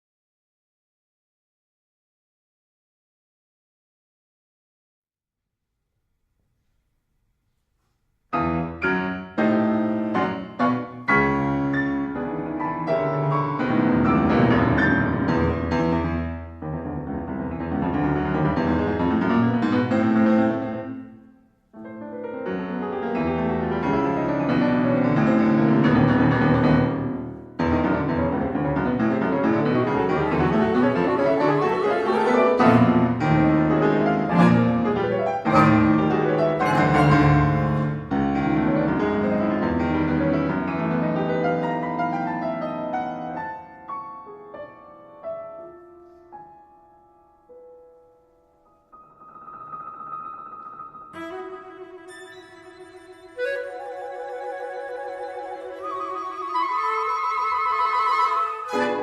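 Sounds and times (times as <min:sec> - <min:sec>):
contemporary classical piano: 0:08.3 - 0:59.0.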